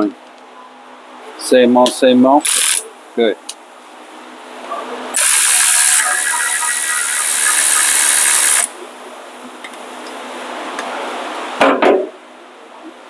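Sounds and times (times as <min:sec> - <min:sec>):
air ratchet hissing: 0:02.4 - 0:02.8, 0:05.2 - 0:08.7.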